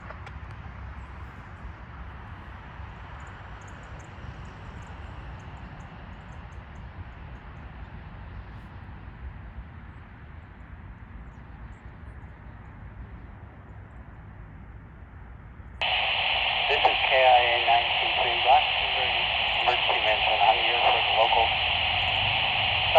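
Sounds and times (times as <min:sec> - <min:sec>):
scanner radio: 0:15.8 - 0:22.9.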